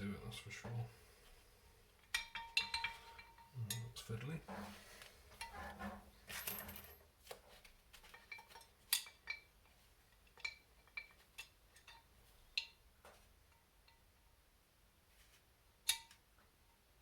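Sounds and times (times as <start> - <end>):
metal parts clicking and clinking: 5.4 - 7.0.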